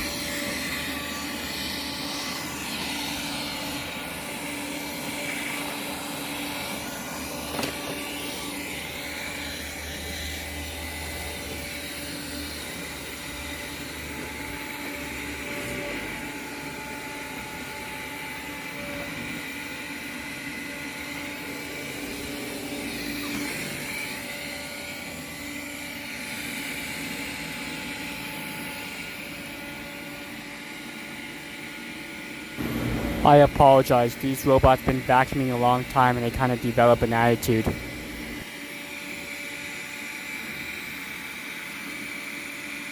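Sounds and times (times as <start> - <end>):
robot vacuum cleaners whirring: 0.0 - 42.9
low hum: 32.6 - 33.6, 37.6 - 38.4
high whine: 32.6 - 38.5.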